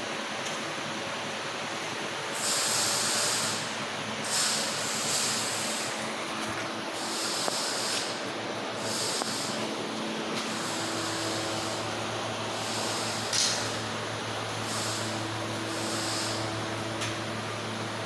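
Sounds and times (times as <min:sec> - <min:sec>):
low machine hum: 0:00.0 - 0:18.0
compressed air hissing: 0:02.4 - 0:06.0, 0:07.0 - 0:08.2, 0:08.8 - 0:09.7, 0:10.4 - 0:11.8, 0:12.5 - 0:13.8, 0:14.6 - 0:16.5.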